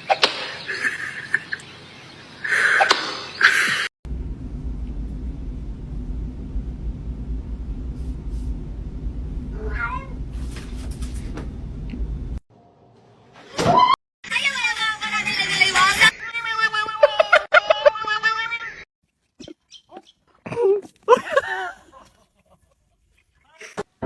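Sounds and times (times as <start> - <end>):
steady low hum: 4.1 - 12.4
cat meowing: 9.6 - 10.1.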